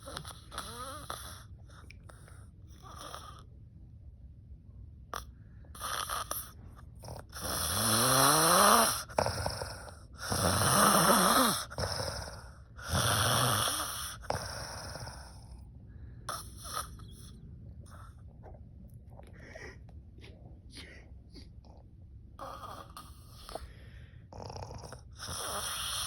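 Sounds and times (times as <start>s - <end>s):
woman snoring loudly: 7.3s - 15.3s, 24.3s - 26.0s.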